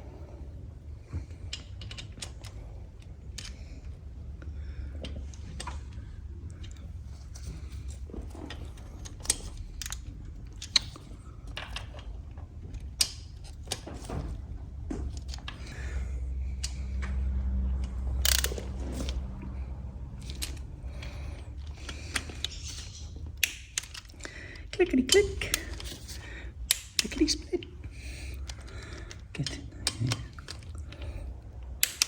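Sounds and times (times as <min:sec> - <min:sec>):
low steady hum: 0:00.0 - 0:32.0
ratchet clicking: 0:18.1 - 0:19.2.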